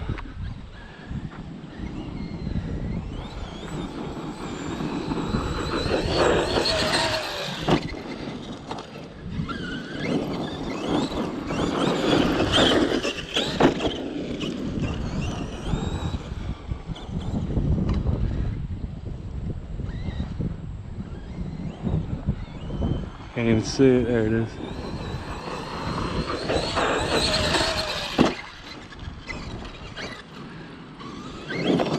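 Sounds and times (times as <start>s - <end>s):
electric motor whining: 0.0s - 31.9s
tyres churning dirt: 1.4s - 17.4s, 23.3s - 31.9s.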